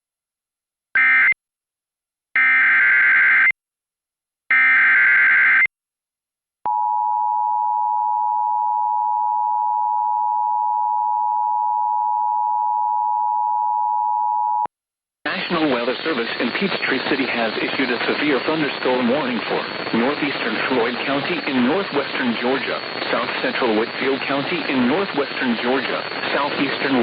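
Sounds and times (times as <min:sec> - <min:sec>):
steady warning alarm tone: 0:15.6 - 0:27.0
screeching digital data bursts: 0:16.1 - 0:27.0.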